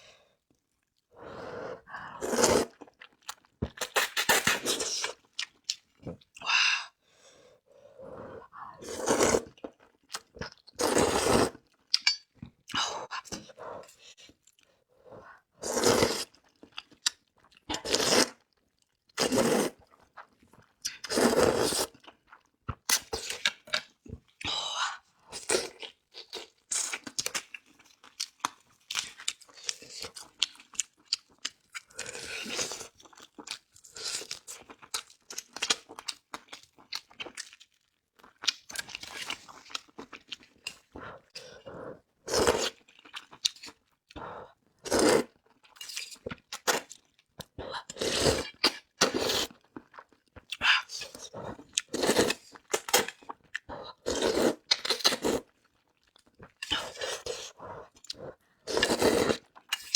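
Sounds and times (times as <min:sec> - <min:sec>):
person crunching and chewing food: 0:25.5 - 0:41.6, 0:42.2 - 0:59.9.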